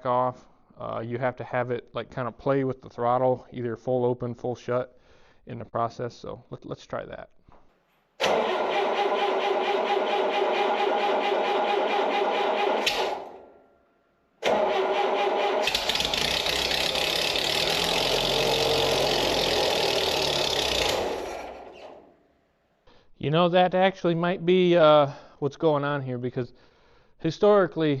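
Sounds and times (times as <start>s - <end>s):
gasoline engine running: 8.2s - 13.4s, 14.4s - 22.1s
engine starter cranking: 8.2s - 13.6s, 14.4s - 22.2s.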